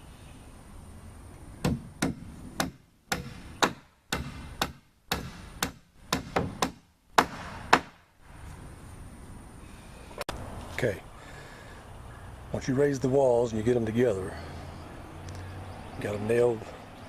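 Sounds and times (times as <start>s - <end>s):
hammer driving nails into wood: 1.6s - 8.0s.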